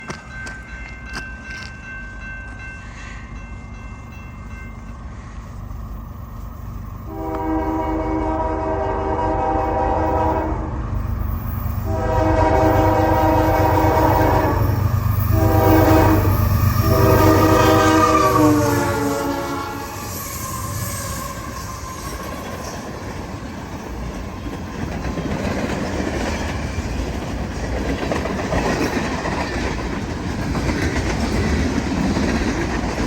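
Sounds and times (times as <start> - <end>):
locomotive air horn blasts: 7.0 - 10.8, 11.8 - 20.1.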